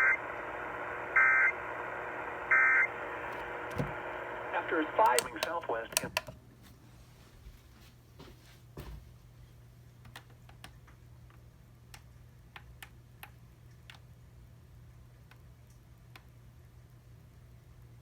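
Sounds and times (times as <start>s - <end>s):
sharp clicks: 5.0s - 6.4s.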